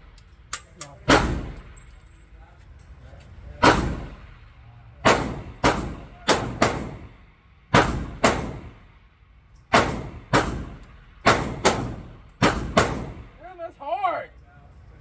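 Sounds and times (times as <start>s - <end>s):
pistol shots echoing indoors: 1.1s - 1.8s, 3.6s - 4.4s, 5.0s - 8.9s, 9.7s - 13.4s.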